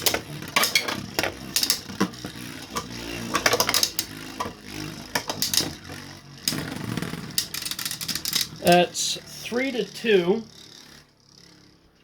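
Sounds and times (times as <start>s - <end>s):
spinning tops clicking as they collide: 0.0s - 9.0s
whir of spinning tops: 0.0s - 12.0s.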